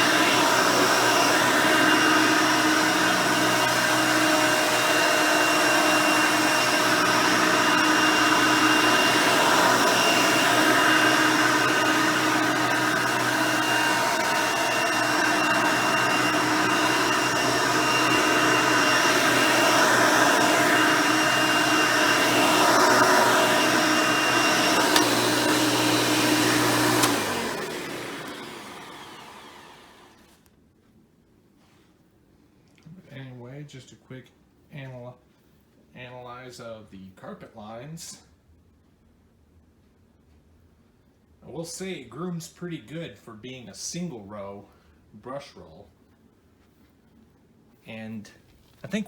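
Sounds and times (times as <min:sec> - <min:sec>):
vacuum cleaner running on carpet: 0:00.0 - 0:30.4
vacuum switch click: 0:24.8 - 0:25.8, 0:26.6 - 0:27.4.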